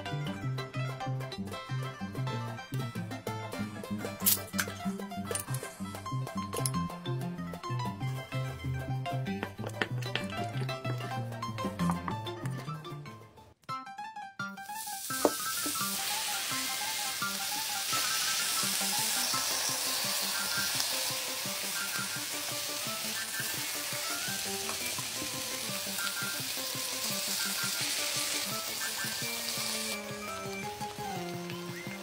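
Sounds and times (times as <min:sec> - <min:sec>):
light background music: 0:00.0 - 0:32.0
food sizzling in hot oil: 0:14.6 - 0:32.0.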